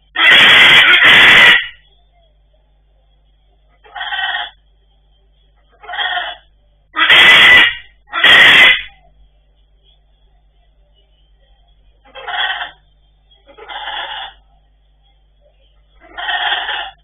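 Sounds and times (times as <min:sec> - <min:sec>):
macaws squawking: 0:00.2 - 0:01.8, 0:03.8 - 0:04.6, 0:05.7 - 0:06.4, 0:07.0 - 0:09.0, 0:12.0 - 0:12.8, 0:13.4 - 0:14.4, 0:16.0 - 0:17.0.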